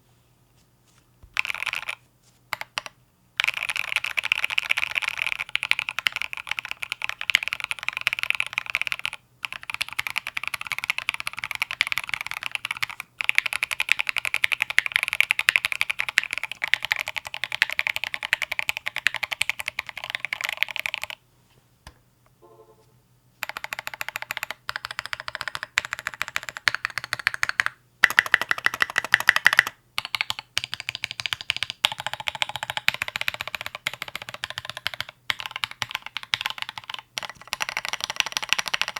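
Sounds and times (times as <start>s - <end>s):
mechanical keyboard typing: 1.4s - 21.2s, 23.4s - 38.9s.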